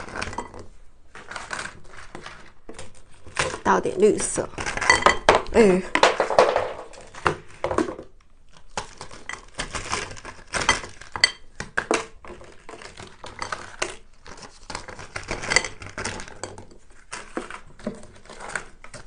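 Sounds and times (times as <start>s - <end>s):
crinkling: 0.0s - 19.0s
spoon scraping a dish: 4.6s - 5.3s, 12.3s - 19.0s.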